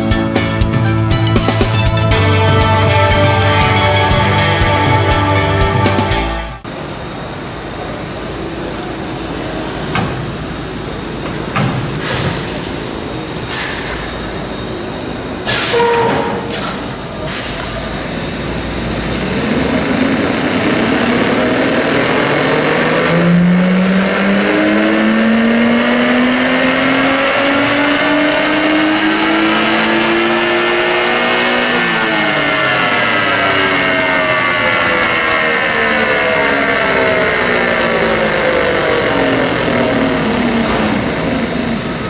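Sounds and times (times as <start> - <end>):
car engine revving hard: 18.1 - 42.0.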